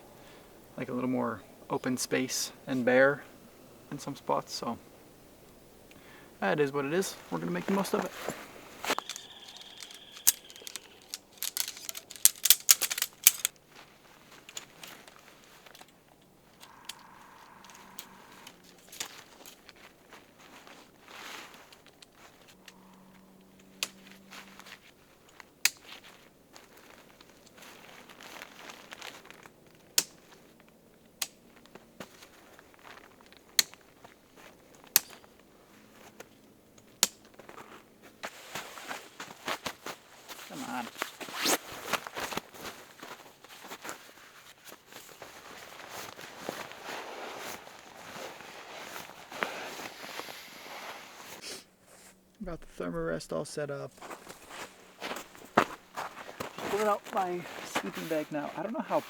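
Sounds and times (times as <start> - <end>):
rustling and crinkling gear: 5.9 - 52.8, 53.9 - 59.0
sharp clicks and clacks: 8.9 - 13.5.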